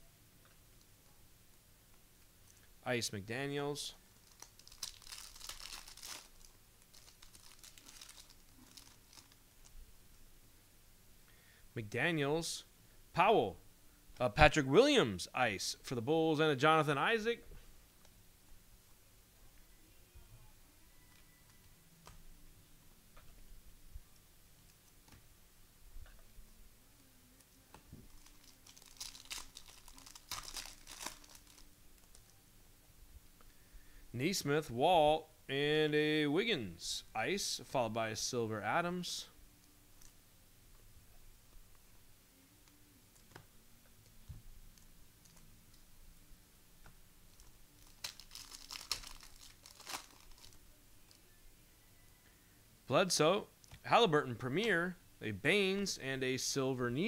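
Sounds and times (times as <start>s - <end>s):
wrapper crinkling and tearing: 4.2s - 9.4s, 28.0s - 32.3s, 47.3s - 51.2s.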